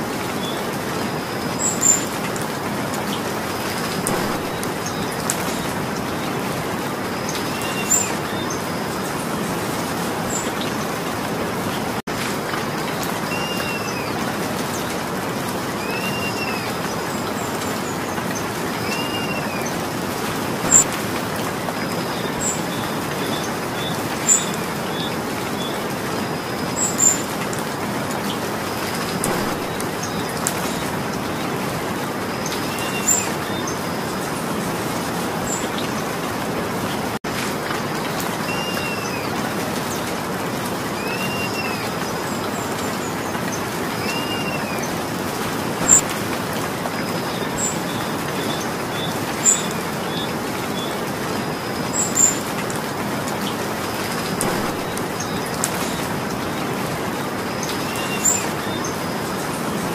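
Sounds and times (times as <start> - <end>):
steady rain falling: 0.0 - 59.9
bird chirping: 4.0 - 5.7, 20.6 - 20.9, 28.9 - 30.9, 54.3 - 56.1.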